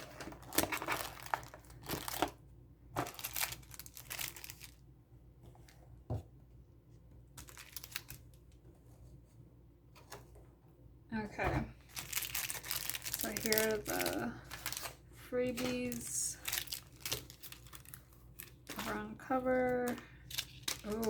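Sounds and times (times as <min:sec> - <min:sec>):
packaging rustling and crinkling: 0:00.0 - 0:02.4, 0:03.0 - 0:04.8, 0:07.4 - 0:08.6, 0:11.8 - 0:21.0.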